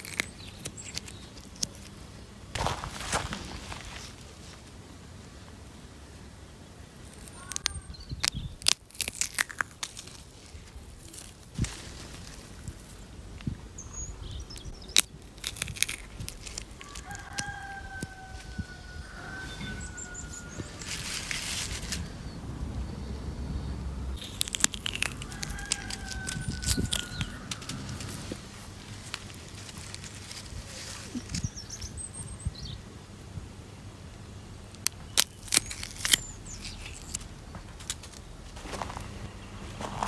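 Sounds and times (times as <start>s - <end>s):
fruit crushing by hand: 0.0s - 2.0s, 2.6s - 4.7s, 7.1s - 13.5s, 14.2s - 19.1s, 24.2s - 32.0s, 34.8s - 40.0s
small birds chirping: 0.0s - 5.6s, 6.6s - 33.0s, 33.9s - 40.0s
rooster crowing: 16.8s - 21.4s, 25.0s - 28.4s.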